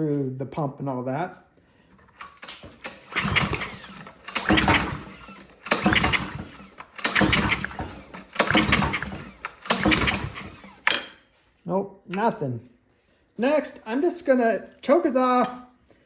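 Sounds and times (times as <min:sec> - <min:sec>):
engine cranking on pull cord: 0:02.2 - 0:11.0.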